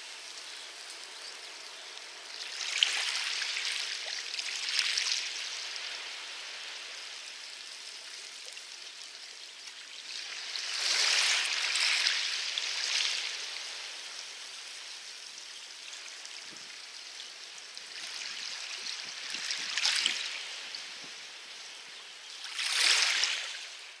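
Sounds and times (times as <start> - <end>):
waves washing onto pebble beach: 10.0 - 14.4.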